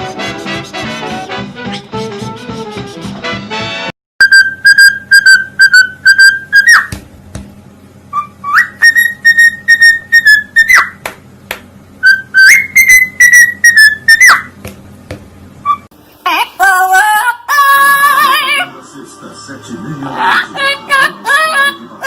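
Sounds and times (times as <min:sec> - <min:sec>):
parrot whistling: 0:04.2 - 0:06.9, 0:08.1 - 0:11.0, 0:12.0 - 0:14.6, 0:15.6 - 0:15.9.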